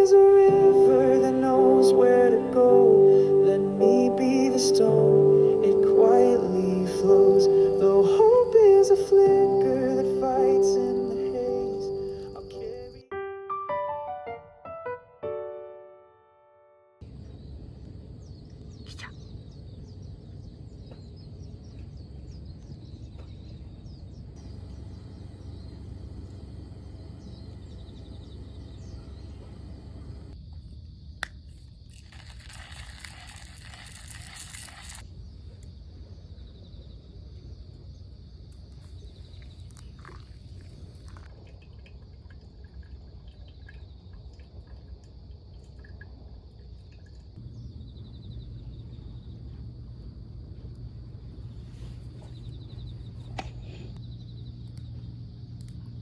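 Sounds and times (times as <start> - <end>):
insects chirring: 0.0 - 13.1, 17.0 - 23.6, 24.4 - 56.0
wind rumble: 17.1 - 30.4, 47.3 - 56.0.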